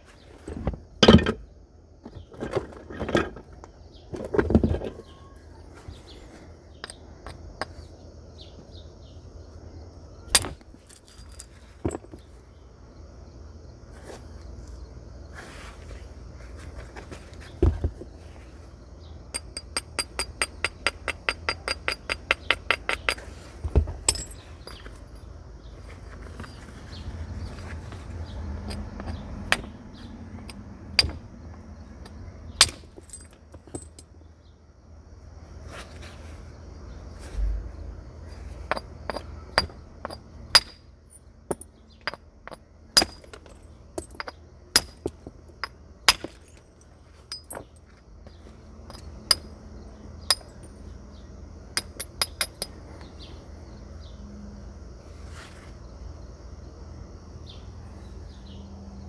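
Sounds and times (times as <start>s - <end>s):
stone striking flint: 10.3s - 12.0s, 19.3s - 25.0s, 31.0s - 31.3s, 38.7s - 40.9s, 41.5s - 46.6s.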